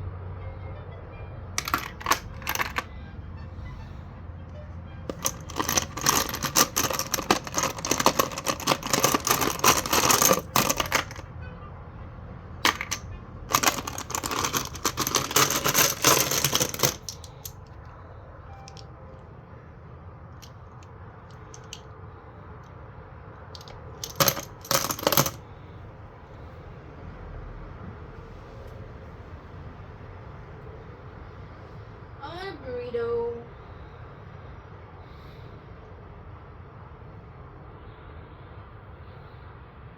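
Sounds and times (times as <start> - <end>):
metal cartridges clinking and rattling: 1.6 - 2.9, 5.1 - 11.2, 12.6 - 17.7, 21.3 - 21.8, 23.6 - 25.4.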